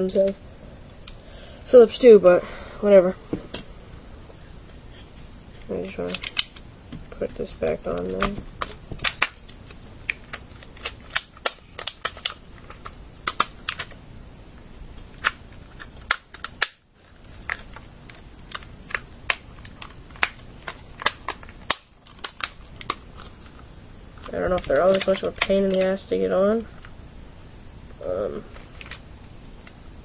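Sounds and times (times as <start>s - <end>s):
plastic controller parts clicking: 5.9s - 6.6s, 7.6s - 14.0s, 17.4s - 23.0s, 24.2s - 25.9s.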